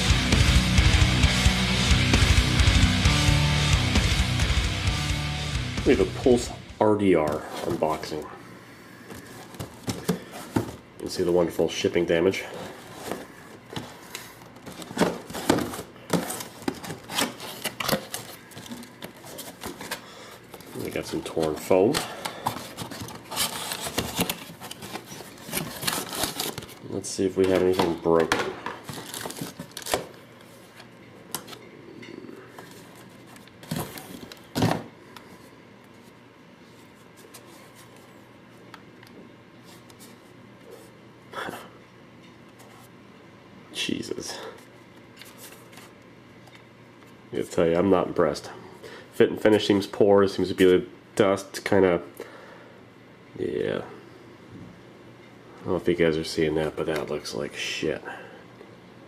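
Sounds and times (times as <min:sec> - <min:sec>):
foam packing rustling and crinkling: 0:12.6 - 0:27.0, 0:28.8 - 0:30.1
packaging scraping and knocking: 0:20.6 - 0:26.8.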